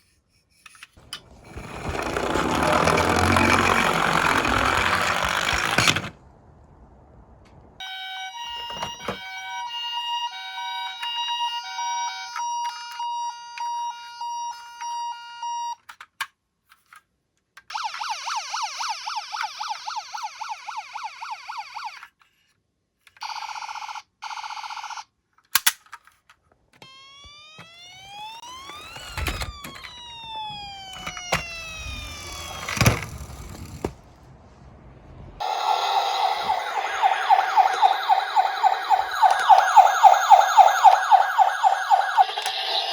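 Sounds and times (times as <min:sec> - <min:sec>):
electronic toy siren: 0:01.5 - 0:06.1, 0:07.8 - 0:15.8, 0:17.7 - 0:22.2, 0:23.2 - 0:25.1, 0:26.8 - 0:33.8, 0:35.4 - 0:42.9
clicks: 0:35.4 - 0:42.9.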